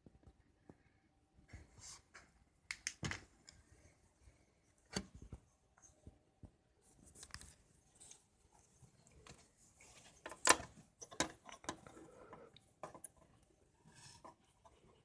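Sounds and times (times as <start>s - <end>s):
small clicks taps and rustles: 8.9s - 15.0s.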